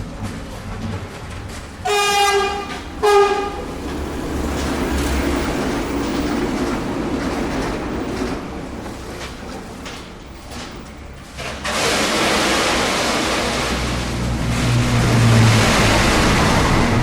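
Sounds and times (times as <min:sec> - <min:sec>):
train rumbling: 0:00.0 - 0:17.0
train horn blasts: 0:01.8 - 0:03.8.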